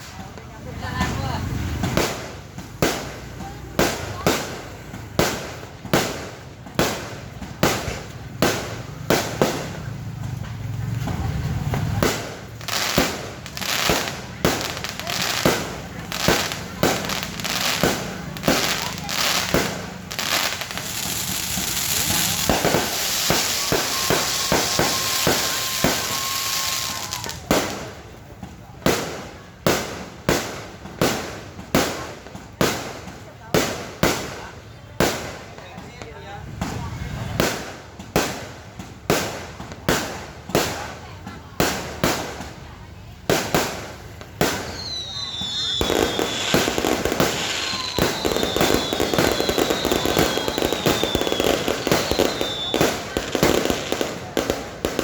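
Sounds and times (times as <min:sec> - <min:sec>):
fireworks exploding: 0:00.0 - 0:55.0
thin steady whistle: 0:44.7 - 0:46.5, 0:47.6 - 0:52.8.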